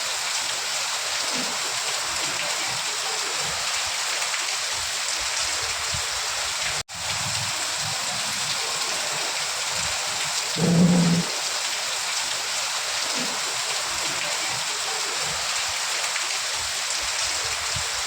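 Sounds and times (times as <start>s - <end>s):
steady rain falling: 0.0s - 18.0s
low rumbles: 10.6s - 11.3s.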